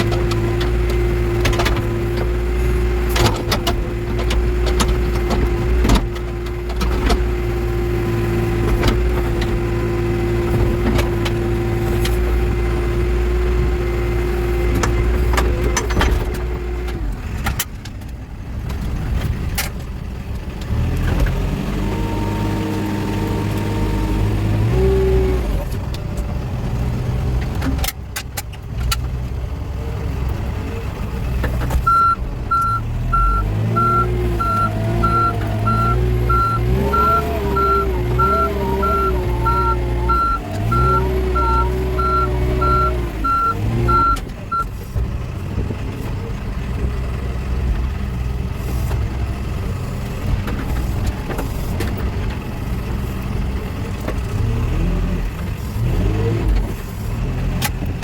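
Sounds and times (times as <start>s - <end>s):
diesel engine running: 0.0s - 58.0s
reversing alarm beeps: 31.9s - 44.7s.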